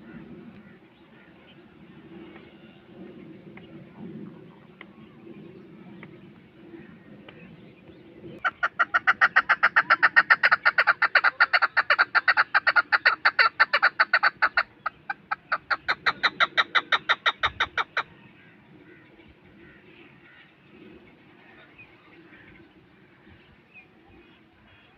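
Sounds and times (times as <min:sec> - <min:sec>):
partridge clucking call: 0:08.4 - 0:18.1.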